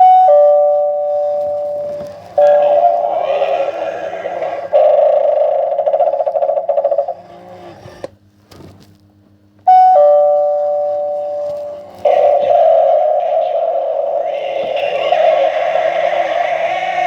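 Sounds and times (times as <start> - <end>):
two-note doorbell chime: 0.0 - 3.0, 9.7 - 11.8
loud warbling sound effect: 2.4 - 6.9, 12.1 - 17.0.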